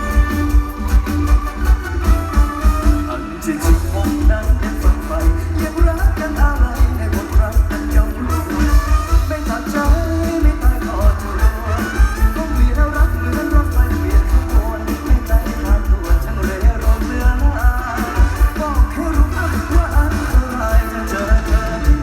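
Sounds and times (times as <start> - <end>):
band music over loud speakers: 0.0 - 22.0
heavy bass drum beat: 0.0 - 22.0
person singing: 0.0 - 22.0.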